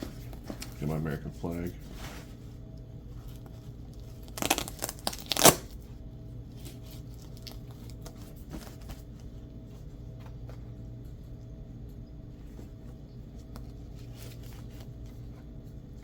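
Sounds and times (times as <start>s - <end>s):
velcro ripping: 4.2s - 5.8s.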